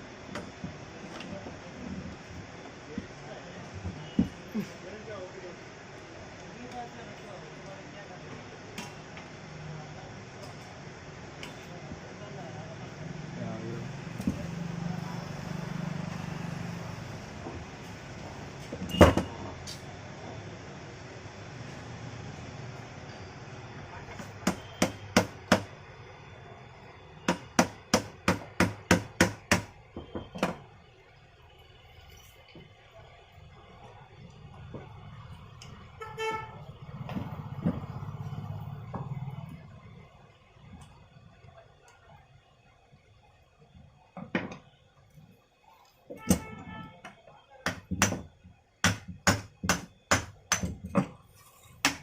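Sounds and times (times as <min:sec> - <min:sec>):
hand hammer strikes: 0:24.2 - 0:25.7, 0:27.3 - 0:30.6, 0:47.6 - 0:51.2
knocks on metal parts: 0:47.6 - 0:51.2.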